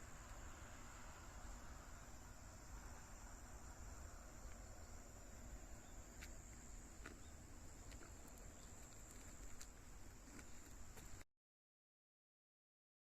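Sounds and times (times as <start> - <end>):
high insect trill: 0.0 - 11.2
faint ticks: 6.2 - 11.2.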